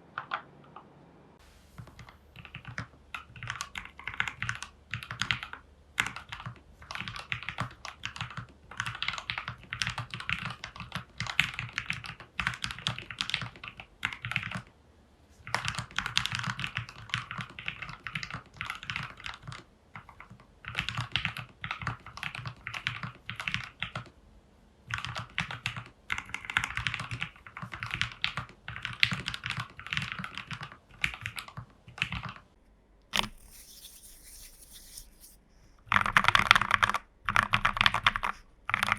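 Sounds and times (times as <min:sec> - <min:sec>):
brief scratchy noise: 0:33.2 - 0:35.4.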